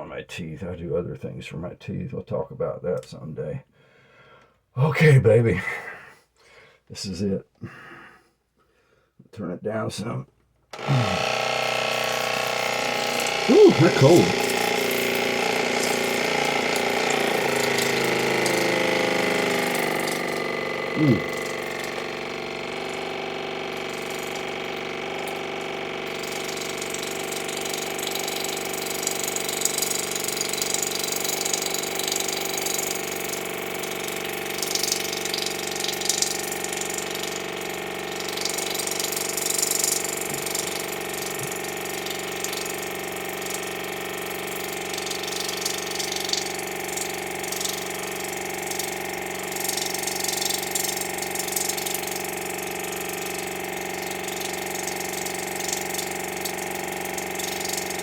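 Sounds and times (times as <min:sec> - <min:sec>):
water pick pump buzzing: 0:10.7 - 0:58.0
water spraying and splashing: 0:12.2 - 0:31.8, 0:33.9 - 0:58.0.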